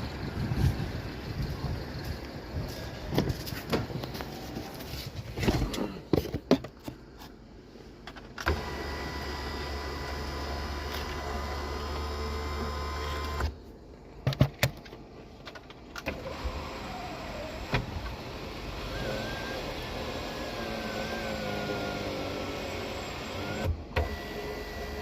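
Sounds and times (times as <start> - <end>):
electric motor humming: 16.2 - 25.0.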